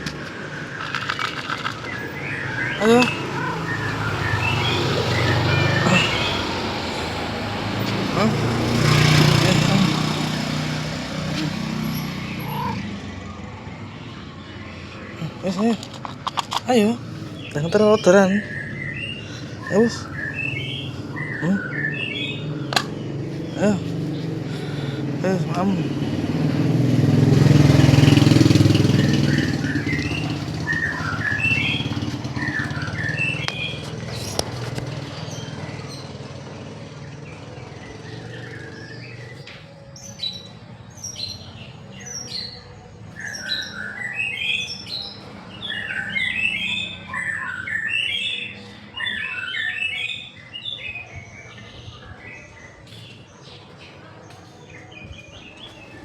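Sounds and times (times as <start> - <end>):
vehicle engine hum: 0.0 - 43.0
small birds chirping: 0.0 - 56.0.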